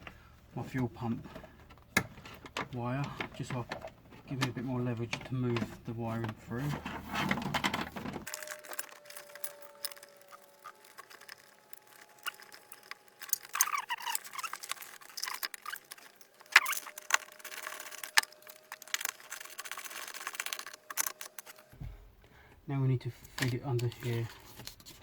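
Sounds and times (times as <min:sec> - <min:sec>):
cables rustling and scraping: 0:00.0 - 0:25.0
plastic clicks: 0:07.2 - 0:21.8.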